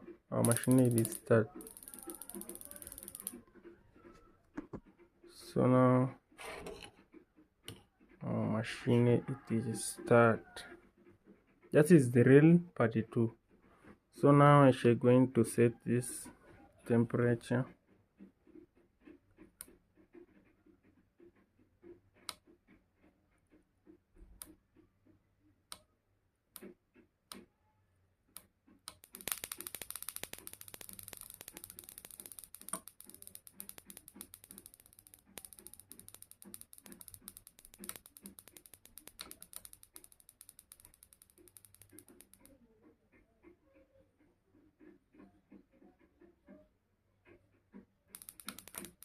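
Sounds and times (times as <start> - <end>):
sharp clicks: 0.0 - 3.4, 28.4 - 42.6, 48.2 - 49.0
mechanical ratcheting clatter: 0.4 - 3.4, 28.9 - 42.6, 48.2 - 49.0.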